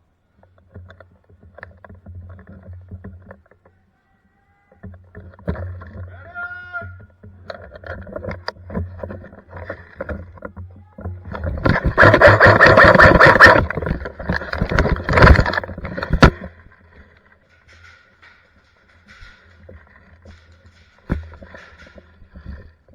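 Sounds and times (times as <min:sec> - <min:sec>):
airsoft gun firing bursts: 0:11.7 - 0:13.7.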